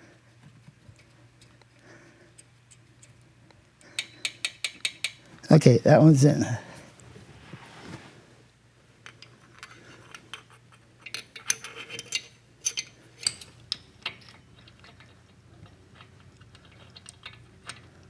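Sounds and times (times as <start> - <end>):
metallic clinks of engine parts: 9.1 - 18.0.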